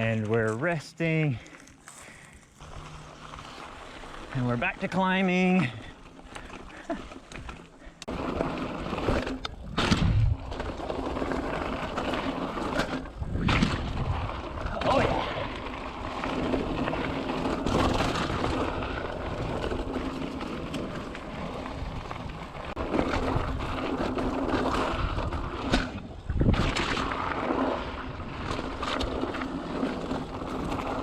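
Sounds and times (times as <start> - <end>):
bike tyres rolling on dirt: 0.0 - 31.0
wind buffeting microphone: 13.1 - 15.6, 21.6 - 28.7.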